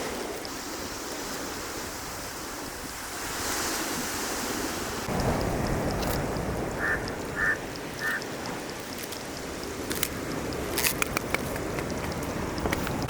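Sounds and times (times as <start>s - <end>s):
wind noise: 0.0s - 13.0s
short bird calls: 6.8s - 8.2s.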